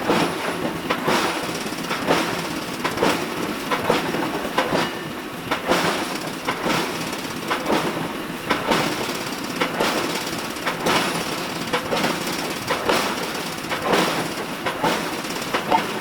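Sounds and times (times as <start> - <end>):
mechanical clatter: 0.1 - 16.0.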